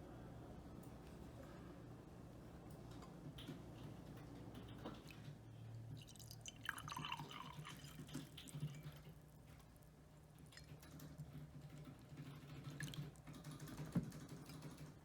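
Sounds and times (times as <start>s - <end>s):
water dripping and trickling: 4.9s - 9.1s.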